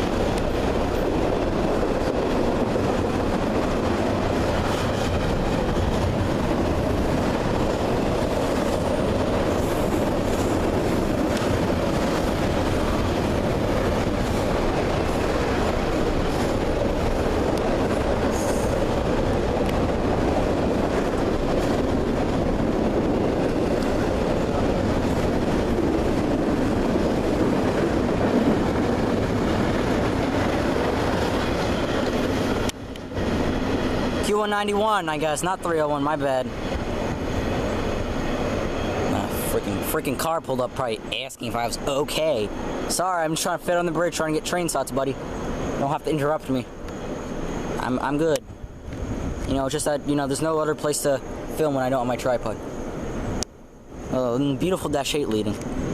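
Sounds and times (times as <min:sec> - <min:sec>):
train wheels clattering on rails: 0:00.0 - 0:53.4.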